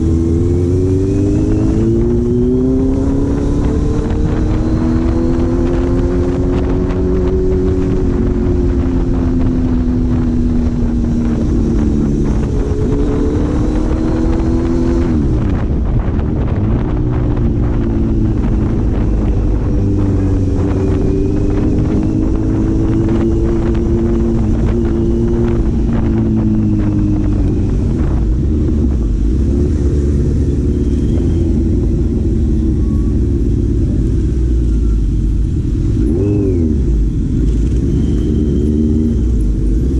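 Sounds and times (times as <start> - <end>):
low rumble: 0.0 - 39.9
vehicle engine running: 0.0 - 39.9.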